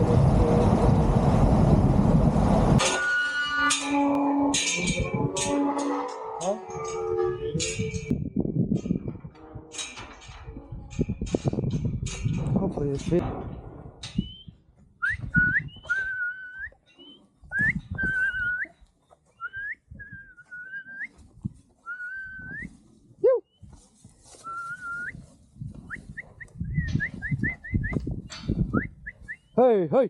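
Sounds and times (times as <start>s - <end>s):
low knocks and clatter: 6.8s - 16.0s
person whistling: 14.2s - 18.7s, 19.4s - 21.2s, 21.8s - 22.7s, 24.4s - 25.2s, 25.9s - 28.0s.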